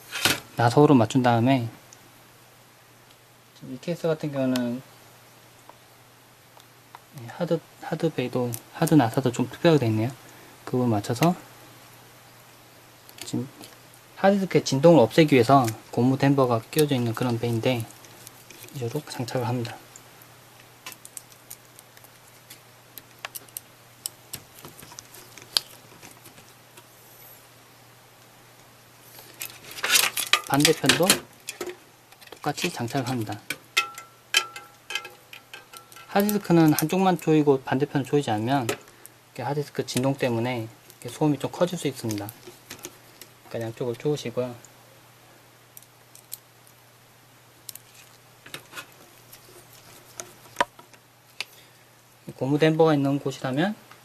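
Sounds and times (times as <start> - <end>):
faint steady hum: 0.0 - 54.0.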